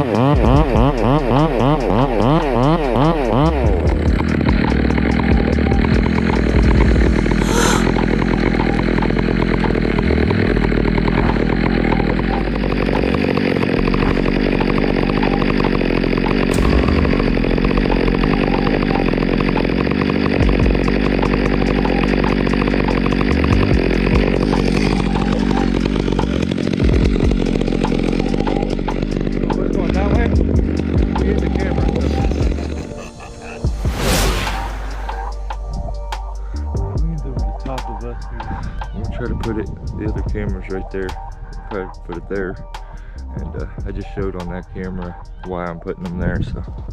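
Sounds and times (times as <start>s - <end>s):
chainsaw cutting into tree: 0.0s - 35.5s.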